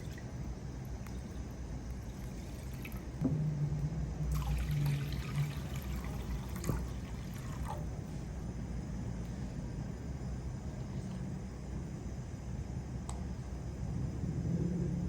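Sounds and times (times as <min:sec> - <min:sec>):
low background hum: 0:00.0 - 0:15.0
liquid pouring and trickling: 0:01.9 - 0:03.2, 0:04.3 - 0:07.9.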